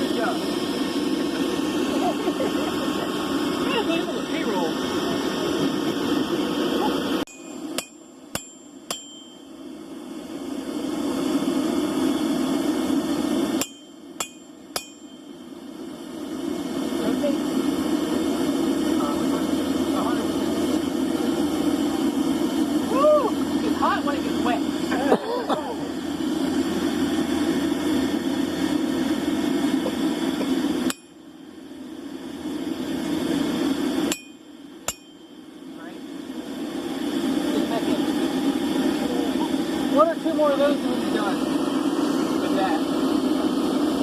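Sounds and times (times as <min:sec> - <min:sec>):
hammer striking metal on anvil: 0:07.3 - 0:09.5, 0:13.6 - 0:15.4, 0:30.9 - 0:31.2, 0:34.1 - 0:35.4
forge roaring: 0:15.6 - 0:35.0, 0:35.7 - 0:44.0
low rushing noise: 0:25.8 - 0:44.0.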